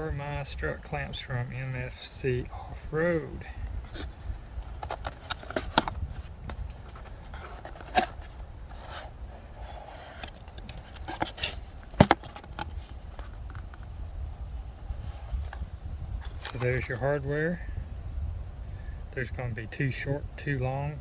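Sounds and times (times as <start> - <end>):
packaging rustling and scraping: 3.8 - 13.8, 15.0 - 16.9
metal parts clicking and knocking: 10.2 - 12.6.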